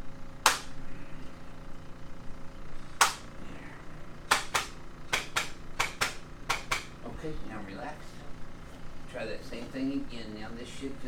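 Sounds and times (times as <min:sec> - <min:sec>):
sharp clicks: 0:00.4 - 0:00.8, 0:03.0 - 0:03.3, 0:04.3 - 0:06.9.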